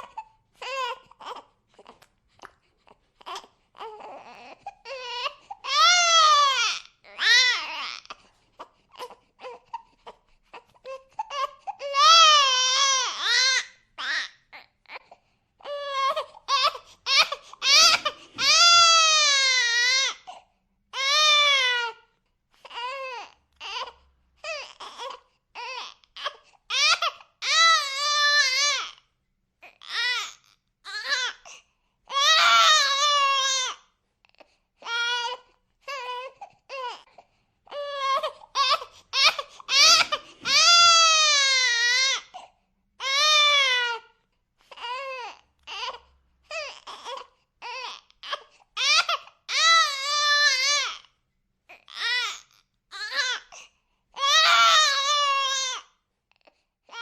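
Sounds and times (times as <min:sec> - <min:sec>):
baby crying: 0:00.0 - 0:02.0, 0:02.8 - 0:53.6, 0:54.2 - 0:55.9.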